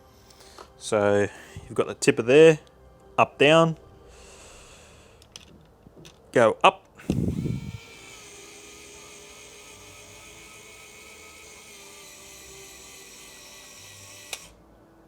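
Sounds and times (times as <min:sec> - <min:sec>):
motor stopping click: 0:07.0 - 0:12.2, 0:13.6 - 0:14.6
small electric motor whining: 0:07.0 - 0:14.6.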